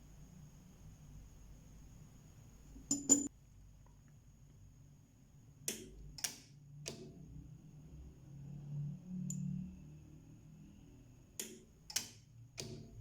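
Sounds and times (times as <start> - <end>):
welder snapping clicks: 5.7 - 7.1, 11.4 - 12.9.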